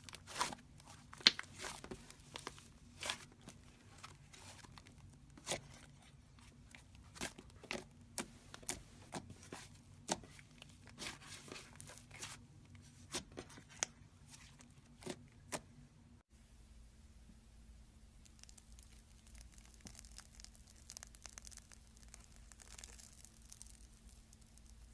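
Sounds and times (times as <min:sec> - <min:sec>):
slime popping and crackling: 0:18.2 - 0:24.9.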